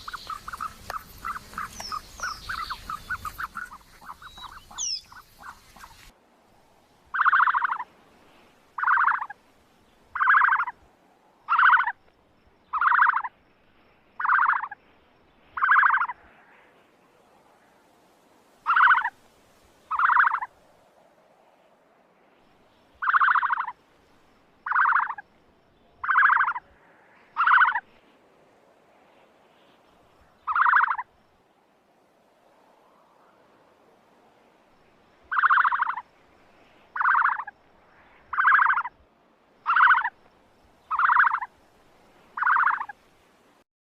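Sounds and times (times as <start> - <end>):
large bird calling: 0.0 - 6.1, 7.1 - 7.9, 8.8 - 9.4, 10.2 - 10.8, 11.5 - 12.0, 12.7 - 13.3, 14.2 - 14.8, 15.6 - 16.2, 18.7 - 19.1, 19.9 - 20.5, 23.0 - 23.8, 24.6 - 25.2, 26.0 - 26.7, 27.4 - 27.8, 30.4 - 31.1, 35.3 - 36.0, 37.0 - 37.5, 38.3 - 38.9, 39.6 - 40.2, 40.8 - 41.5, 42.4 - 43.0.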